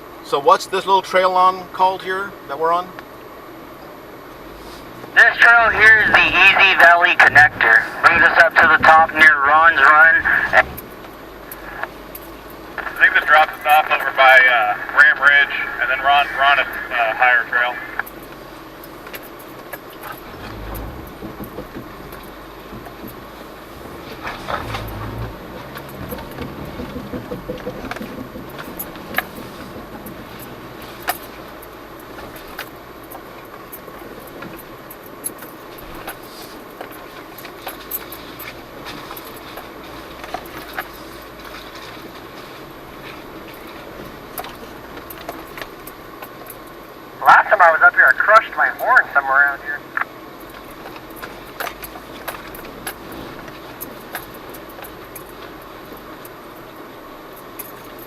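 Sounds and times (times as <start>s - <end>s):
vehicle driving off-road: 0.0s - 58.0s
knocks and rattles: 19.1s - 33.2s.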